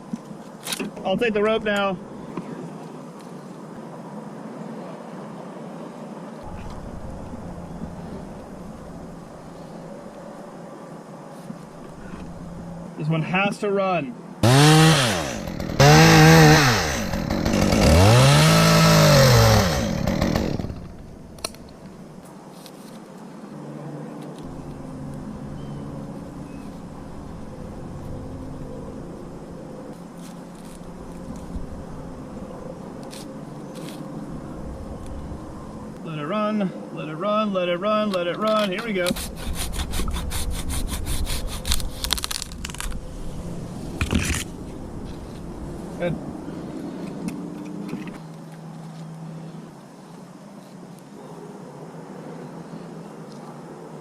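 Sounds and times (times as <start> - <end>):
chainsaw engine revving: 14.4 - 21.1
saw cutting through wood: 14.4 - 21.1, 38.8 - 42.5.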